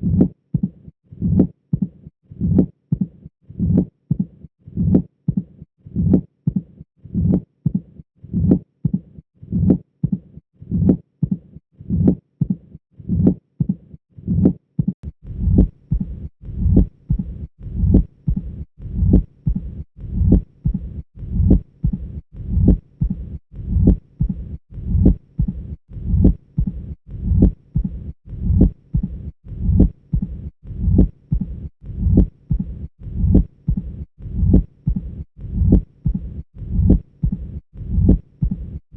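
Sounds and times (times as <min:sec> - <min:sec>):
heartbeat sounds: 0:00.0 - 0:38.8
low heart murmur rumble: 0:14.3 - 0:38.8.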